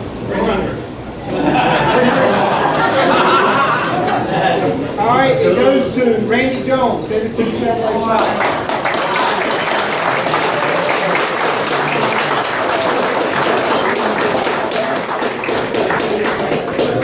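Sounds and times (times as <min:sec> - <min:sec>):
crowd applauding: 0:08.2 - 0:17.0.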